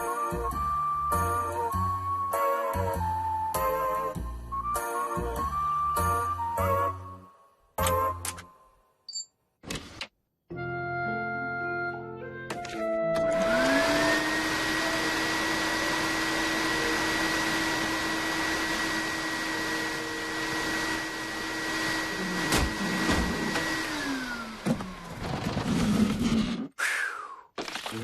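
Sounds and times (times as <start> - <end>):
small electric motor whining: 13.3 - 25.5.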